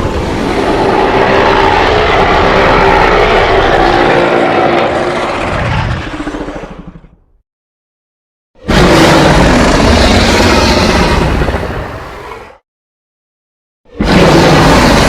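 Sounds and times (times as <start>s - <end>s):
creature roaring: 8.6s - 12.6s, 13.9s - 15.0s.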